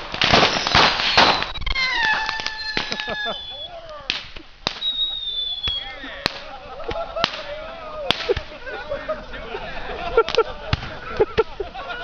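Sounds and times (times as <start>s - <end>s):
firework bangs and cracks: 0.0s - 8.6s
falling firework whistle: 0.3s - 3.8s, 4.6s - 6.0s.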